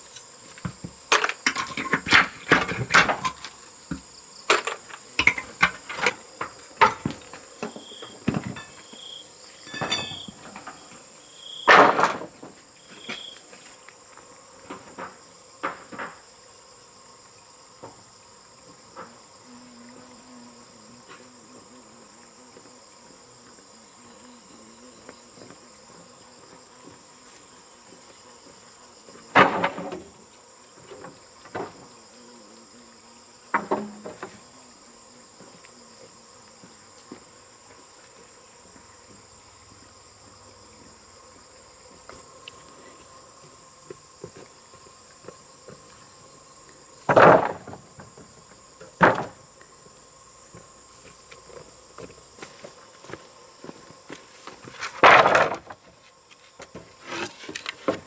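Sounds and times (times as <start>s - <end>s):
crickets chirring: 0.0s - 58.0s
knocks and thuds of hand work: 0.4s - 9.0s, 9.6s - 11.0s, 11.7s - 13.2s, 14.6s - 16.2s, 29.3s - 30.2s, 30.8s - 31.9s, 33.5s - 34.4s, 47.0s - 49.4s, 54.5s - 56.0s, 56.6s - 58.0s.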